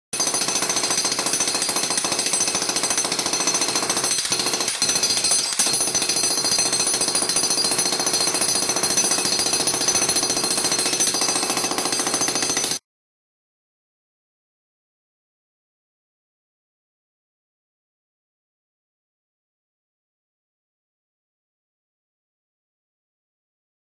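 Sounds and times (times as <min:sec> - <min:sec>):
rapid mechanical hammering: 0:00.2 - 0:12.8.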